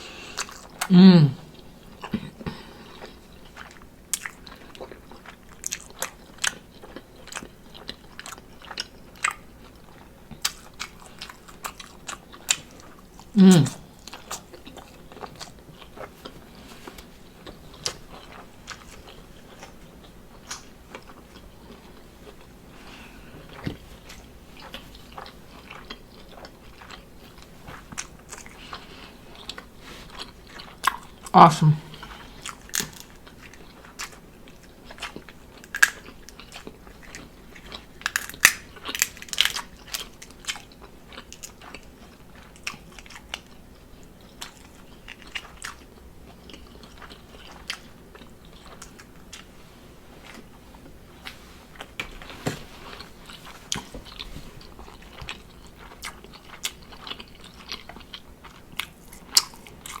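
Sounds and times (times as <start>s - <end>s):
person chewing seafood: 0.0s - 60.0s.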